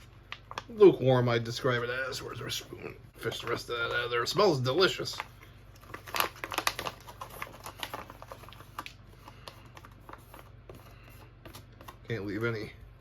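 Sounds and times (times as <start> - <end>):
foil pouch crinkling: 3.2 - 11.7.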